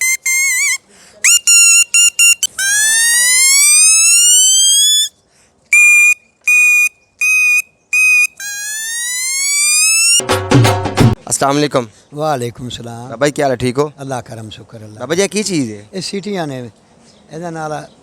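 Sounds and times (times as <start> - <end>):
shrill toy whistle notes: 0.0 - 5.1, 5.7 - 10.2.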